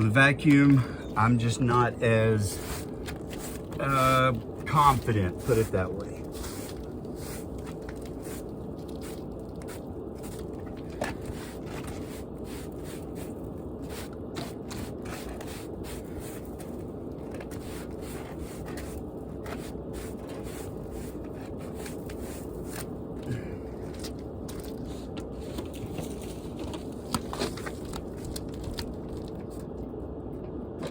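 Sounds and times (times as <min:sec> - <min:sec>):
steady low hum: 0:00.0 - 0:30.9
scraping strokes: 0:01.7 - 0:23.0.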